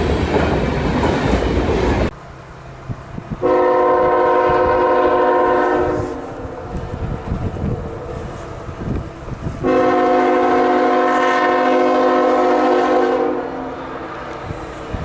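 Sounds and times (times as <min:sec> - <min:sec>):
train rumbling: 0:00.0 - 0:15.0
locomotive air horn blast: 0:03.4 - 0:06.8, 0:09.6 - 0:15.0.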